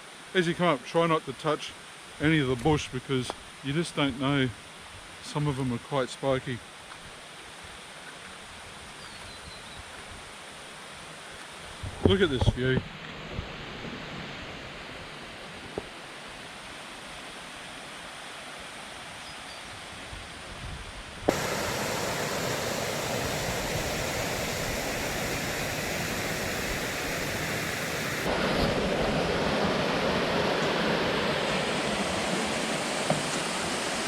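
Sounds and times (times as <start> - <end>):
creek water rushing: 21.3 - 34.0.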